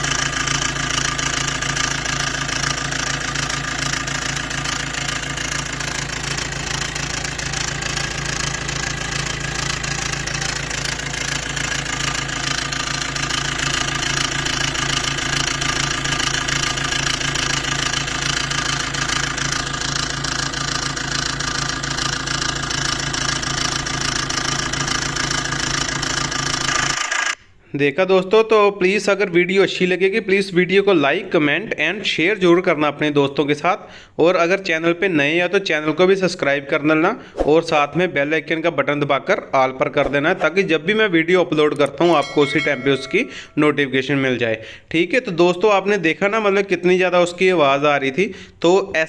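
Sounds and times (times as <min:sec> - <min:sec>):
car engine idling: 0:00.0 - 0:26.7.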